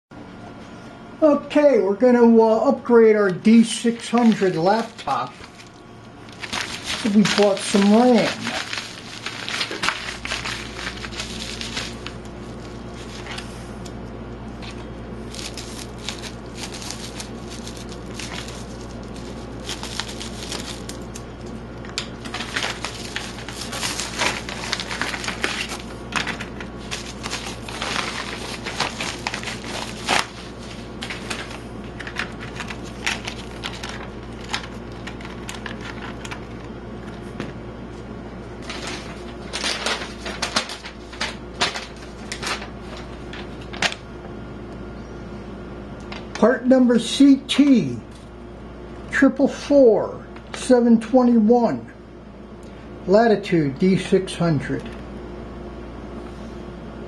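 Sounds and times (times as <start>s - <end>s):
steady low hum: 0.2s - 57.0s
plastic packaging crinkling: 3.5s - 37.2s, 38.6s - 44.0s.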